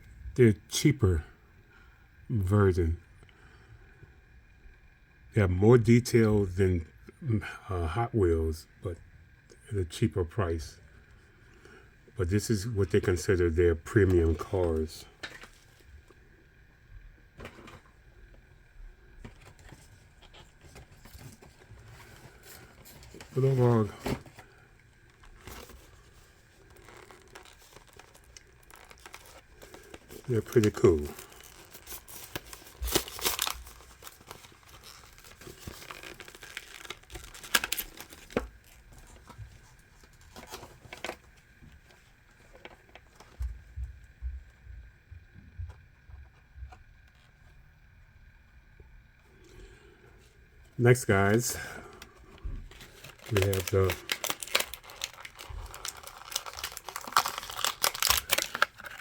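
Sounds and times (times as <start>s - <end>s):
packaging crinkling and tearing: 19.2s - 41.4s, 51.1s - 59.0s.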